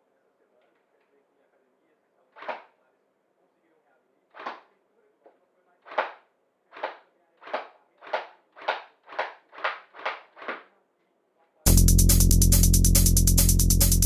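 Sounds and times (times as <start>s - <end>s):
electronic music: 11.7s - 14.0s.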